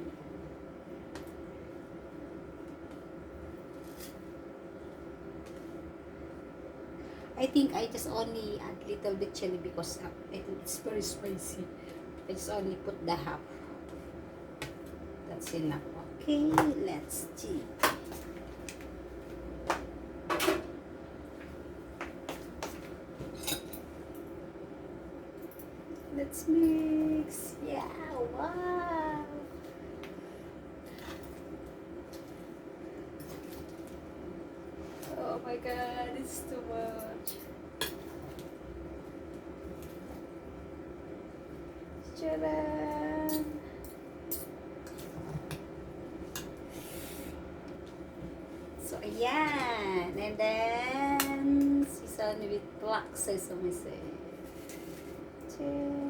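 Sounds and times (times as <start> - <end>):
faint steady hum: 0.0 - 56.0
woman singing ta-da: 26.3 - 29.4.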